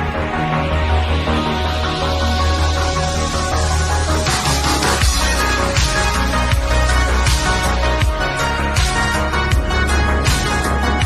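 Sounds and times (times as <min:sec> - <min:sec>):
music with bass and beat: 0:00.0 - 0:11.0.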